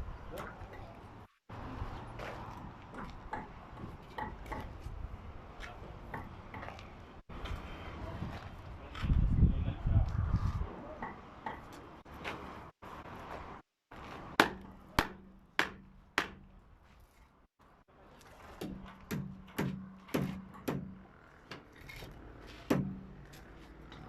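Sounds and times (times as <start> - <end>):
hammer driving nails into timber: 18.6 - 21.6.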